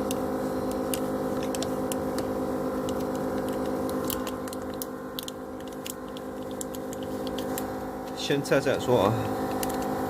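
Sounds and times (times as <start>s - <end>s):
steady electrical hum: 0.0s - 10.0s.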